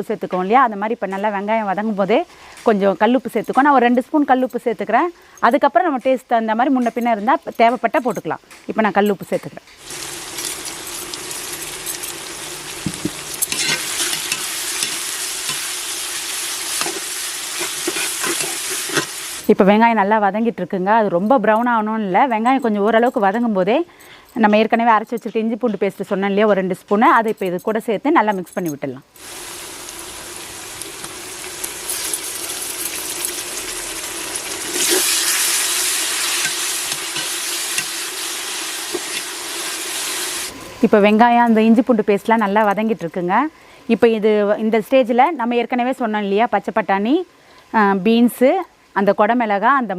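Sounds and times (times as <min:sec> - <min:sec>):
spoon scraping a pan: 0:09.8 - 0:19.4, 0:34.7 - 0:40.2
onions sizzling in hot oil: 0:09.8 - 0:19.5, 0:29.2 - 0:40.5.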